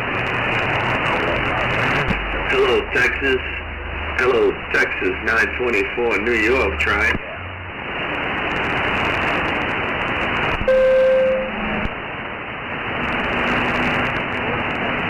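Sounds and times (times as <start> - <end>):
radio static hiss: 0.0 - 15.0
radio signal whistle: 10.6 - 11.6.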